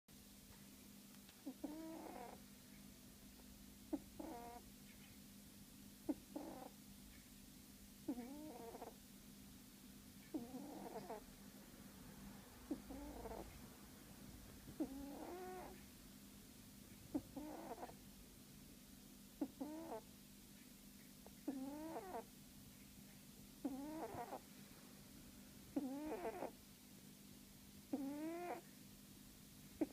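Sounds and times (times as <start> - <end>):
cat snoring: 1.4 - 2.4, 3.9 - 4.6, 6.1 - 6.8, 8.0 - 9.0, 10.3 - 11.3, 12.7 - 13.6, 14.8 - 15.8, 17.1 - 18.0, 19.4 - 20.1, 21.4 - 22.3, 23.6 - 24.4, 25.7 - 26.6, 27.9 - 28.7.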